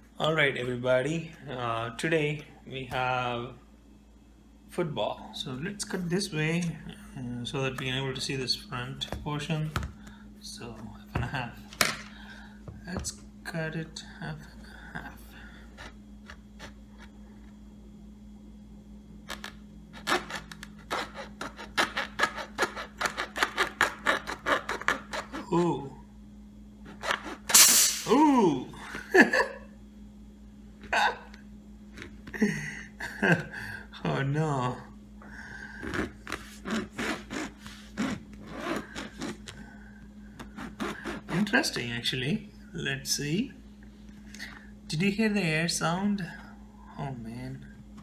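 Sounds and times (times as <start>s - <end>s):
blade sawing through leather: 36.2s - 39.4s, 40.6s - 41.5s.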